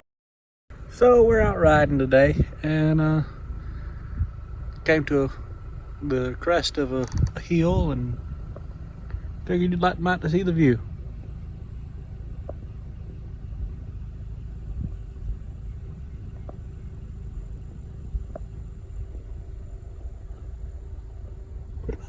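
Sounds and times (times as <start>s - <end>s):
car engine idling: 0.7s - 22.0s
faint ticks: 18.1s - 19.2s.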